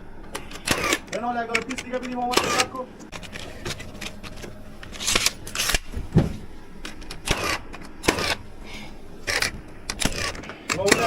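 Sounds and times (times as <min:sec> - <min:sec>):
deep thump: 0:06.0 - 0:06.5.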